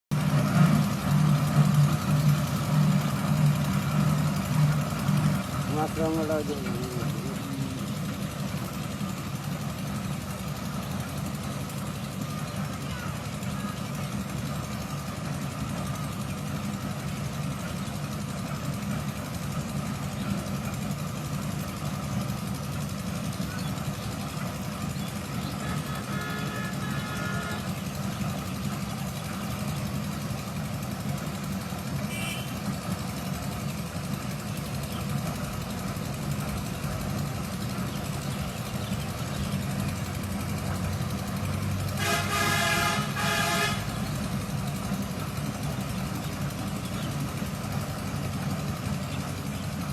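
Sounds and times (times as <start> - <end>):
engine running: 0.0 - 49.9
horn sounding: 25.6 - 27.8, 32.1 - 32.7, 41.9 - 44.2.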